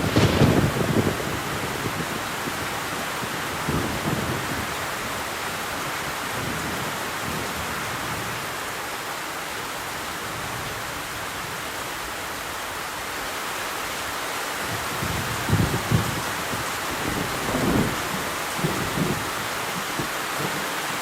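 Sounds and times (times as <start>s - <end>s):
distant thunder rumble: 0.0s - 5.2s, 15.1s - 21.0s
steady rain falling: 0.0s - 21.0s.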